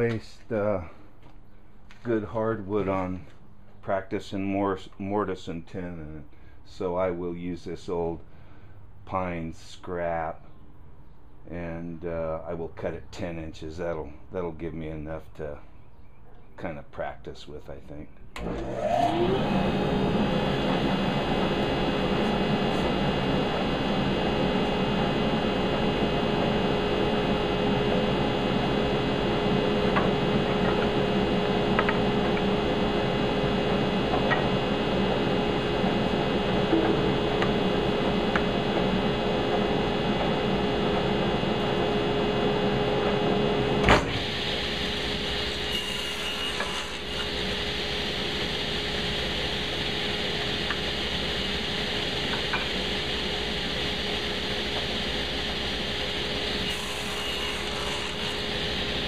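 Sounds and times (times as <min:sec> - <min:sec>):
electric saw motor running: 0:18.4 - 0:59.0.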